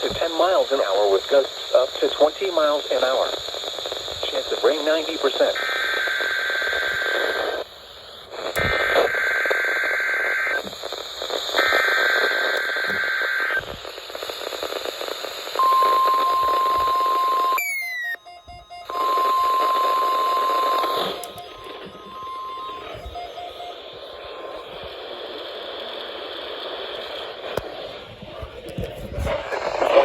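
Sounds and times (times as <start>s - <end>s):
radio static: 0.0s - 30.0s
buzzing two-tone data squawks: 15.6s - 24.9s
steady warning alarm tone: 15.6s - 25.8s.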